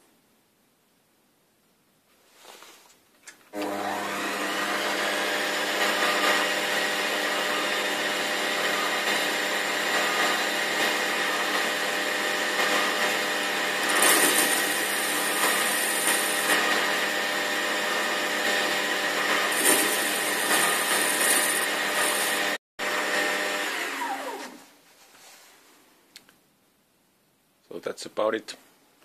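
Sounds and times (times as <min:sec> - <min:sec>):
metal lathe running: 0:03.6 - 0:24.2.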